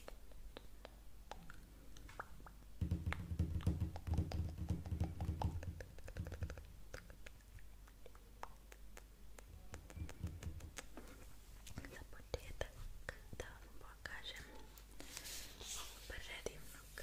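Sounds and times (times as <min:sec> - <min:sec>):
rapid tapping on objects: 0:02.8 - 0:07.4, 0:09.7 - 0:11.2.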